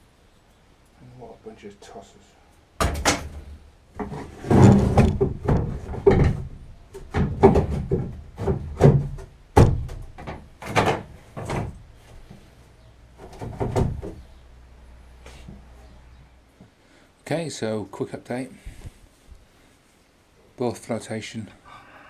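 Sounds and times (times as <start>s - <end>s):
knocks and clunks of objects: 2.8s - 12.5s, 13.2s - 14.3s.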